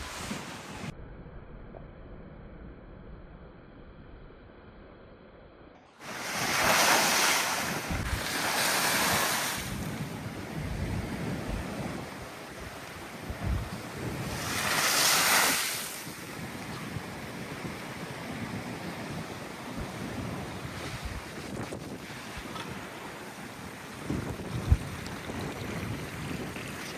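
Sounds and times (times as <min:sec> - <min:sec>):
sea waves crashing: 0:00.0 - 0:00.9, 0:06.0 - 0:26.9
wind buffeting microphone: 0:06.1 - 0:26.9.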